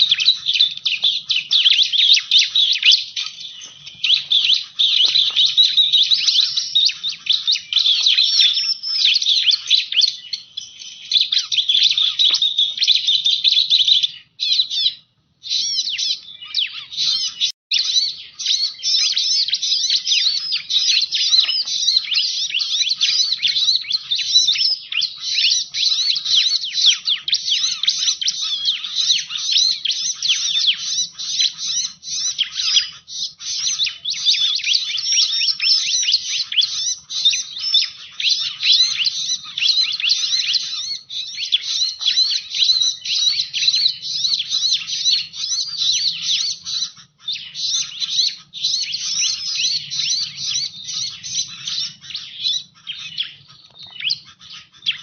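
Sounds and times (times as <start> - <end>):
bird chirps and trills: 0.0 - 55.0.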